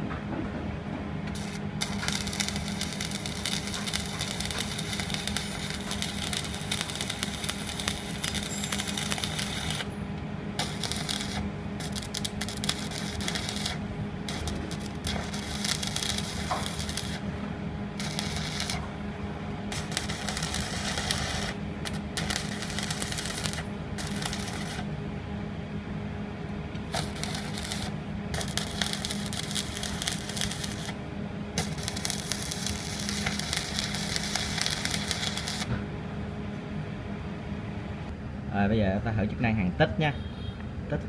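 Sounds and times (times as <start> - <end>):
low hum: 0.0 - 38.5
welding arc crackling: 1.3 - 25.0, 26.8 - 35.7.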